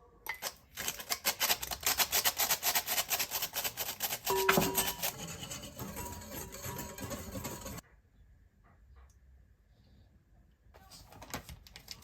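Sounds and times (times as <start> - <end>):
rapid scraping strokes: 0.8 - 7.8.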